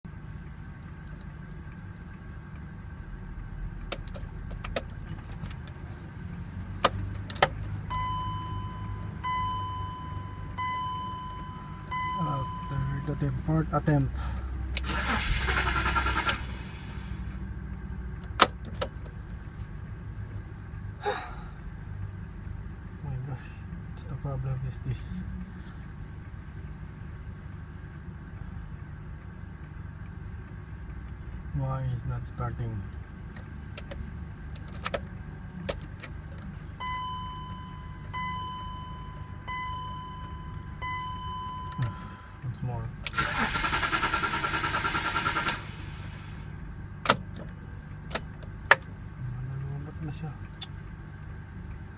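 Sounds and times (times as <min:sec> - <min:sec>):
low steady rumble: 0:00.0 - 0:51.9
dashboard warning chime: 0:07.8 - 0:13.7, 0:36.8 - 0:42.6
engine cranking without starting: 0:14.2 - 0:17.4, 0:43.0 - 0:46.5.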